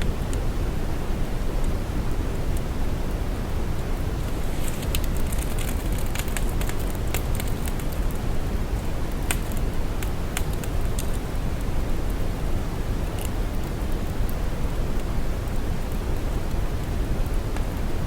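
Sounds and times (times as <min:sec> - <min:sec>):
deep steady hiss: 0:00.0 - 0:18.0
static crackles: 0:03.7 - 0:18.0.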